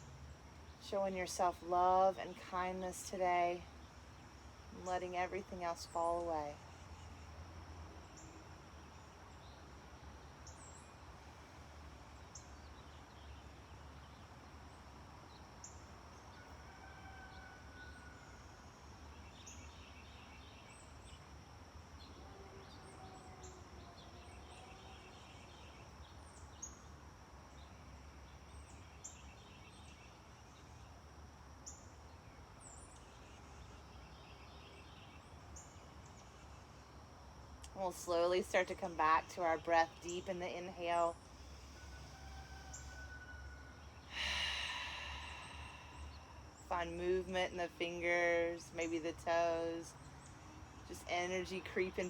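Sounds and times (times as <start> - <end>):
insect drone: 39.9 - 48.9
low hum: 44.0 - 49.7.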